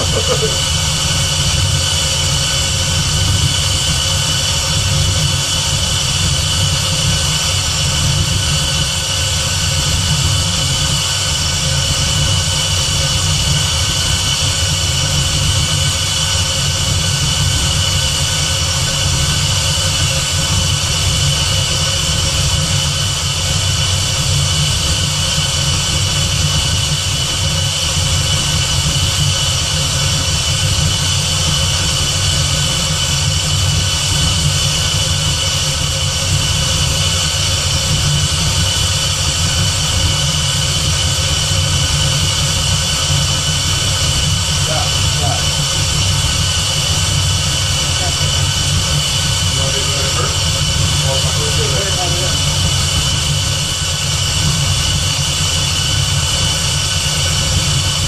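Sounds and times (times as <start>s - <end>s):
car engine idling: 0.0s - 6.8s, 27.1s - 58.0s.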